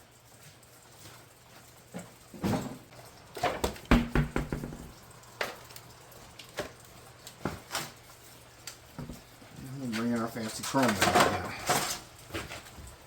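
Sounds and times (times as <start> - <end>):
tools and wheel parts clanking: 10.5 - 12.6.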